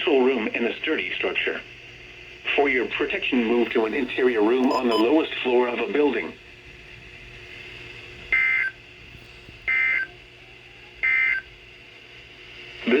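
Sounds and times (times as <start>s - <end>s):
two-tone digital data squawk: 4.6s - 5.1s.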